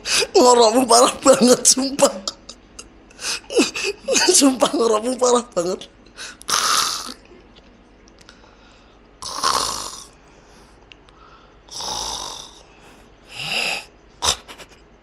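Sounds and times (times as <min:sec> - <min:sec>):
man snoring heavily: 0:06.3 - 0:07.2, 0:09.2 - 0:10.1, 0:11.7 - 0:12.7, 0:13.3 - 0:13.9.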